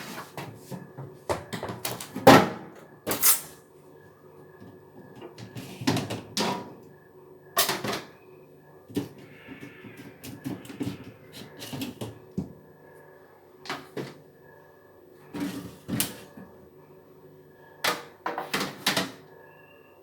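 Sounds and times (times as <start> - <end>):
clicks and knocks of fridge parts: 17.8 - 19.2.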